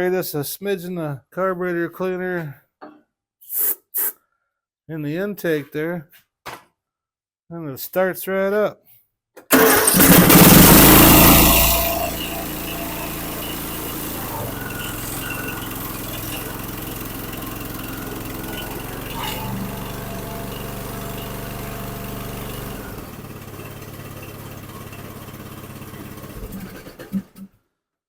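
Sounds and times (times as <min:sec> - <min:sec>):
mower engine running: 0:09.5 - 0:27.4.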